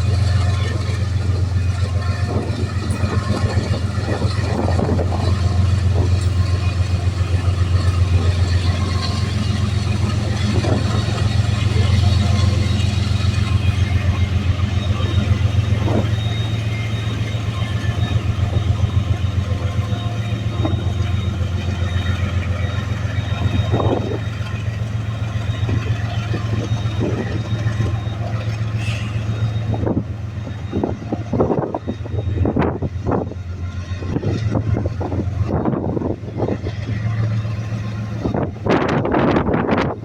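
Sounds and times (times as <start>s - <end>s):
diesel locomotive engine running: 0.0s - 40.0s.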